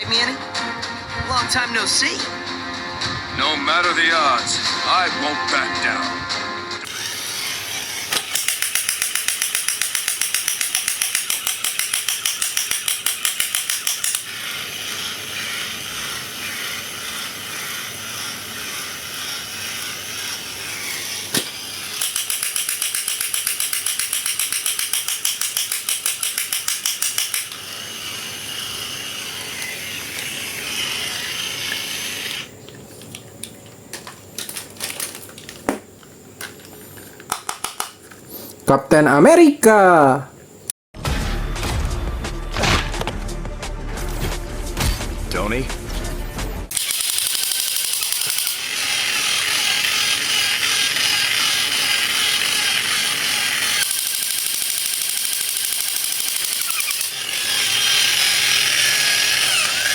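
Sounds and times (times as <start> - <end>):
steady grinding noise: 6.8 - 37.2, 46.6 - 59.9
rapid mechanical rattling: 46.7 - 59.9.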